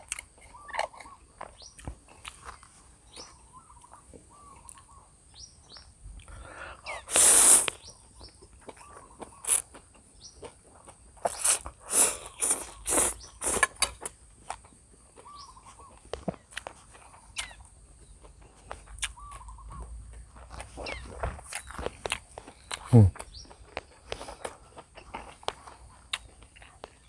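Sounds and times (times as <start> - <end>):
faint bird calls: 0.4 - 1.8, 3.1 - 9.7, 15.2 - 16.5, 19.0 - 20.1
slurping noodles: 7.1 - 7.8, 11.3 - 13.7.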